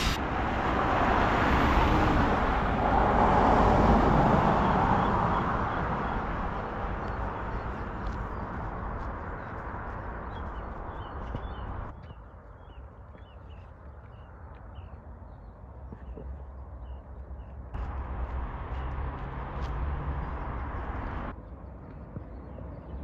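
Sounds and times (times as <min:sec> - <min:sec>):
vehicle passing by: 0:00.0 - 0:11.9, 0:17.8 - 0:21.4.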